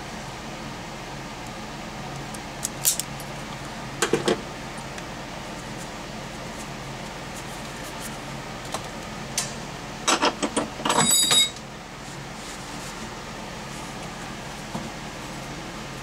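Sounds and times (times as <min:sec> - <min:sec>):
steady low hum: 0:00.0 - 0:16.0
metallic rattle with ring: 0:10.9 - 0:11.6.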